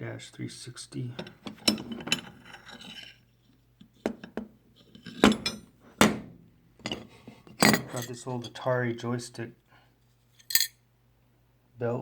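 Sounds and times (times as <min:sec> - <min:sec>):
metal hand tools clinking: 0:07.6 - 0:08.6, 0:10.4 - 0:10.7.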